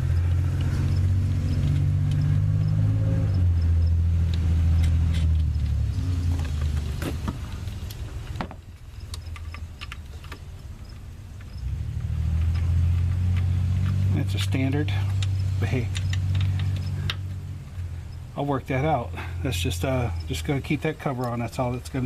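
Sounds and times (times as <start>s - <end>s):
metallic clicks of washer and nut: 15.1s - 17.3s.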